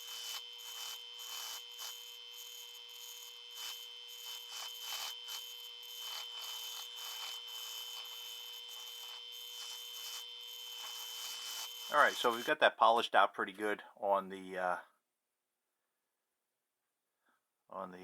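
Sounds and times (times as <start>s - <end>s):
metal rubbing hiss on wheel: 0.0s - 12.5s
polishing wheel whine: 0.0s - 12.5s.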